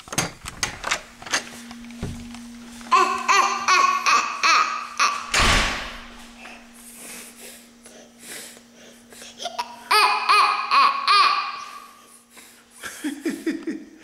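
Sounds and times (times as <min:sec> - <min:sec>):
toddler yelling and squealing: 0:02.9 - 0:05.3
loud thump: 0:05.3 - 0:06.2.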